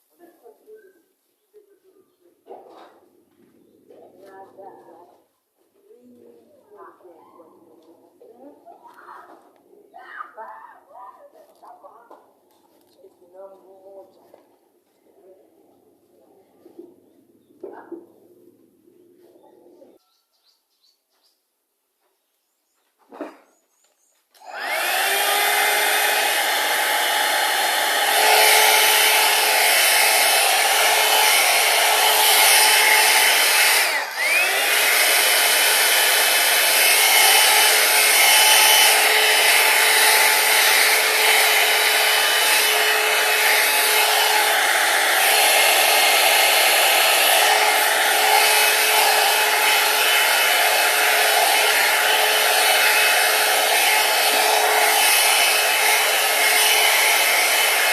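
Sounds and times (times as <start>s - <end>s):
hair dryer motor whine: 24.4s - 57.9s.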